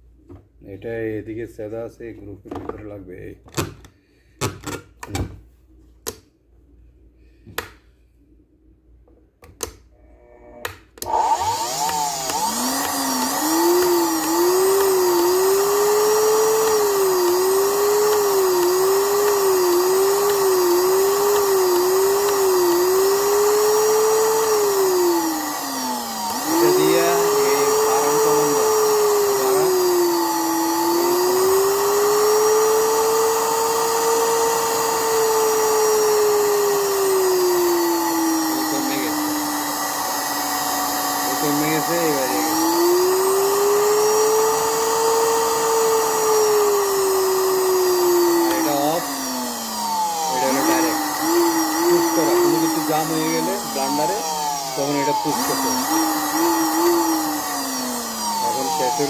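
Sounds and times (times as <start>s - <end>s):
blender motor whining: 10.0s - 59.0s.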